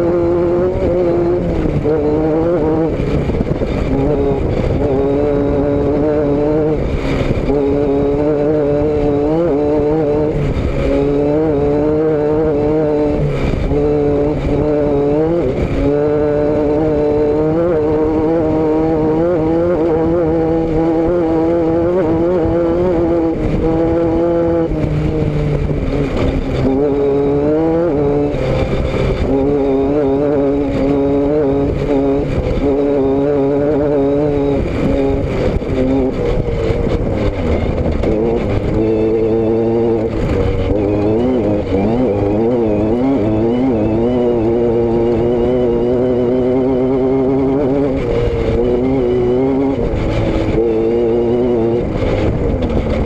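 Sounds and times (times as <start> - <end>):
vehicle engine and exhaust running: 0.0 - 53.0.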